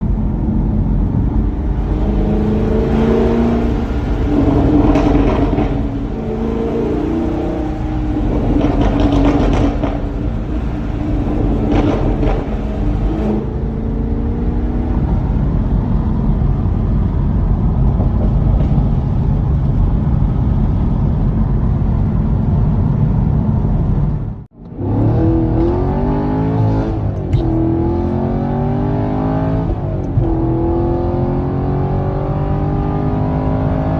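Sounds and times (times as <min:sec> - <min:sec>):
car engine revving: 0:00.0 - 0:33.9
exhaust crackles and pops: 0:00.6 - 0:06.6, 0:07.2 - 0:13.8, 0:14.5 - 0:24.8, 0:26.6 - 0:27.7.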